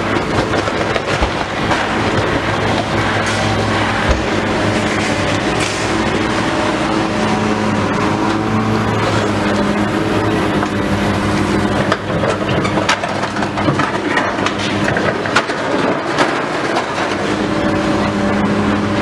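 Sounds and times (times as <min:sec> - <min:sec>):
debris crunching and cracking: 0:00.0 - 0:06.5, 0:08.3 - 0:17.8
demolition machinery engine hum: 0:00.0 - 0:19.0
sharp knocks: 0:00.4 - 0:04.5.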